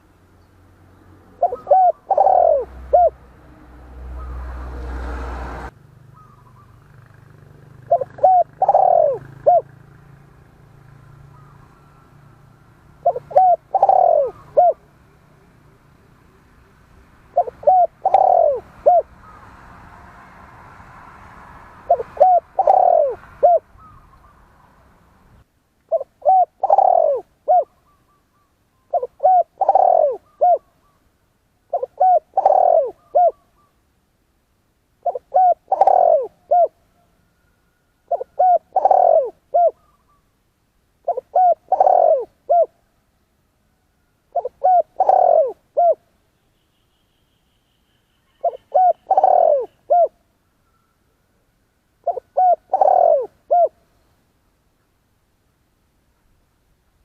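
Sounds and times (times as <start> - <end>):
dove cooing: 1.3 - 3.3, 7.7 - 9.8, 13.0 - 19.5, 21.9 - 24.4, 25.9 - 31.0, 31.7 - 33.7, 35.0 - 40.3, 41.0 - 42.8, 44.3 - 46.0, 48.3 - 50.8, 52.0 - 53.8.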